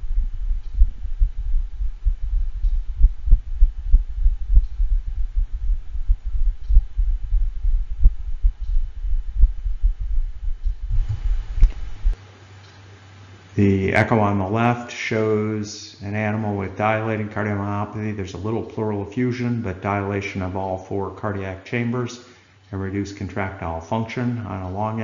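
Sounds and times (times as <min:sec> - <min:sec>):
fast irregular heartbeat: 0:00.0 - 0:12.2
steady low hum: 0:00.0 - 0:25.0.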